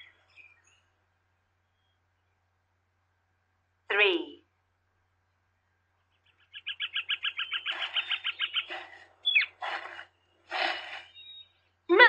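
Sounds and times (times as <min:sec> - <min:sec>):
fast high bat chirps: 0:06.5 - 0:11.2.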